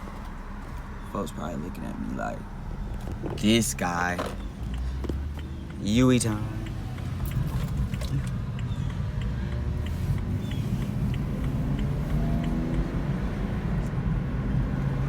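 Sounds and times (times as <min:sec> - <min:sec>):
car engine and road noise: 0:00.0 - 0:15.0
faint ticks: 0:04.2 - 0:14.0.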